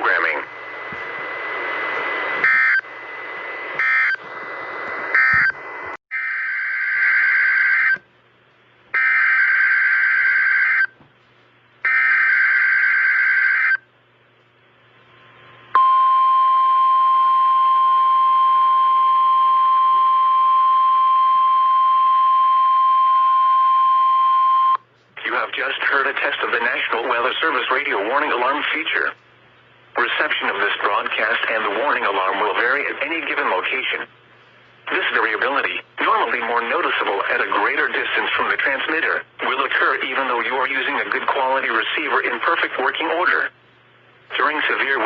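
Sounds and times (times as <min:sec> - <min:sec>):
radio static hiss: 0:00.0 - 0:06.0, 0:25.1 - 0:29.2, 0:29.9 - 0:43.6, 0:44.2 - 0:45.0
steady warning alarm tone: 0:02.4 - 0:02.9, 0:03.7 - 0:04.3, 0:05.1 - 0:08.0, 0:09.0 - 0:10.9, 0:11.9 - 0:13.8.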